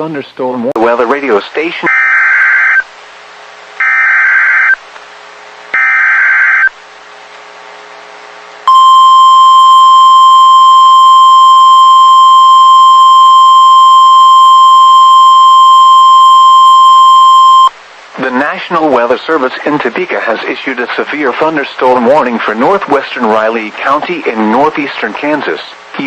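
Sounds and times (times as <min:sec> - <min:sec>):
steady alarm tone: 0:03.8 - 0:04.8, 0:05.8 - 0:06.7, 0:08.7 - 0:17.8.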